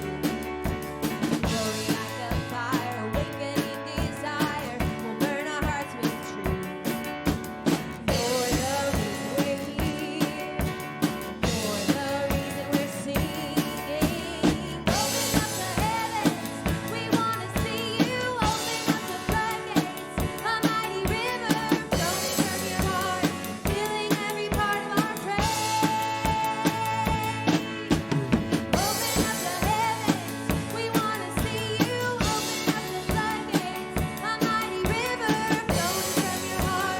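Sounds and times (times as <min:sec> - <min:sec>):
vocals singing: 0:00.0 - 0:00.6, 0:01.3 - 0:07.0, 0:07.8 - 0:36.9
drum kit steady beat: 0:00.0 - 0:36.9
guitar: 0:00.0 - 0:36.9.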